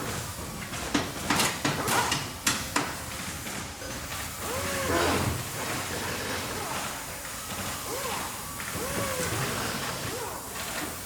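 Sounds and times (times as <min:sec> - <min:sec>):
sharp knocks and clanks: 0:00.4 - 0:04.2.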